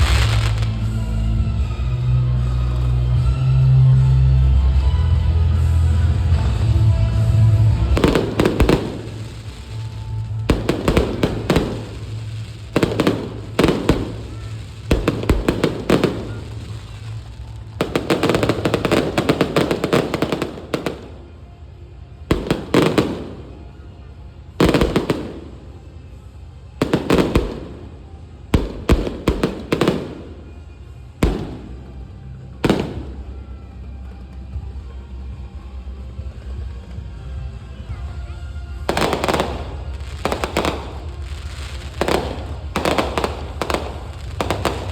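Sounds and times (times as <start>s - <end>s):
fireworks bangs with crackling: 0.0s - 2.1s, 6.2s - 21.4s, 22.2s - 23.9s, 24.5s - 33.6s, 38.7s - 44.9s
music playing: 0.0s - 44.9s.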